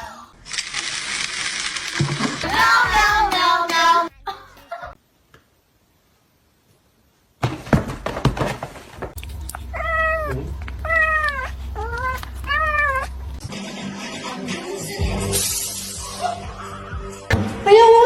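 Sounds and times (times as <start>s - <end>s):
knocks and handling noise: 7.4s - 9.7s
cat meowing: 9.7s - 13.2s.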